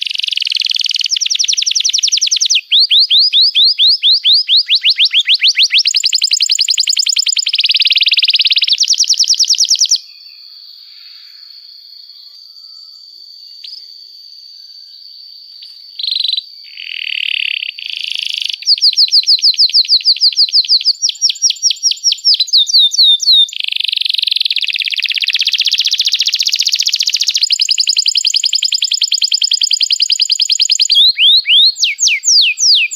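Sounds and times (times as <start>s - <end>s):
canary singing trills: 0.0s - 10.6s, 15.6s - 32.9s.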